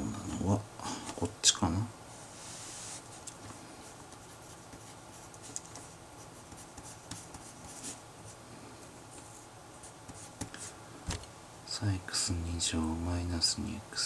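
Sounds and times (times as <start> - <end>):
pen scratching on paper: 4.4 - 8.0.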